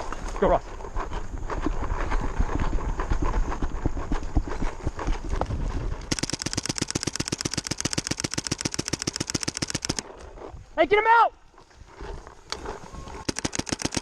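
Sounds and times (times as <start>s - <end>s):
paintball marker firing rapidly: 6.1s - 10.0s, 13.2s - 14.0s.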